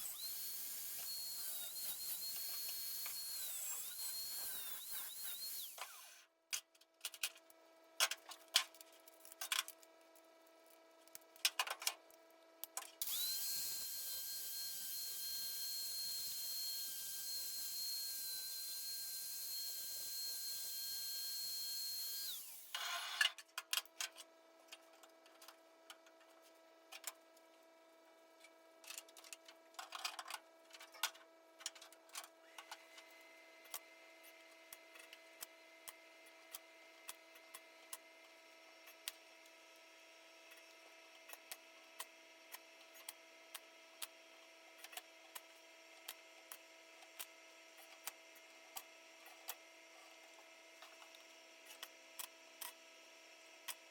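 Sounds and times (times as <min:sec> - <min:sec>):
power tool whining: 0:00.0 - 0:06.2, 0:13.0 - 0:23.3.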